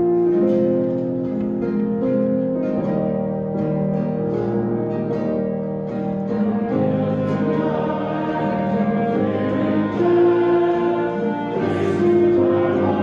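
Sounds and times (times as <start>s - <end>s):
plucked strings: 0.0s - 13.0s
voices singing: 6.2s - 13.0s.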